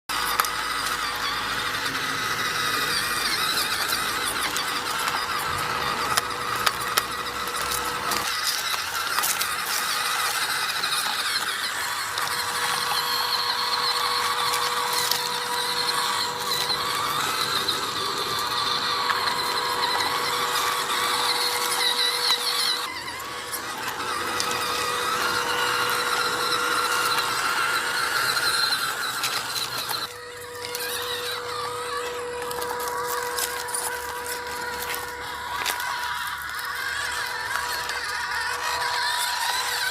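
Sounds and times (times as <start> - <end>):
electric motor whining: 0.0 - 39.9.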